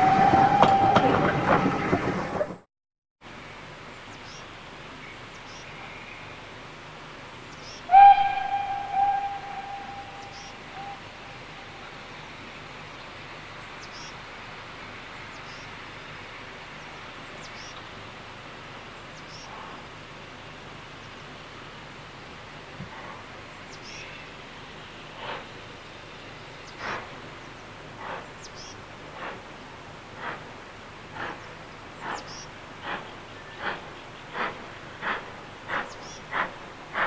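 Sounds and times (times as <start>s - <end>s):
steam locomotive whistle: 0.0s - 2.6s, 7.9s - 12.1s
steady outdoor hiss: 3.2s - 37.0s
faint bird chirps: 7.6s - 11.4s.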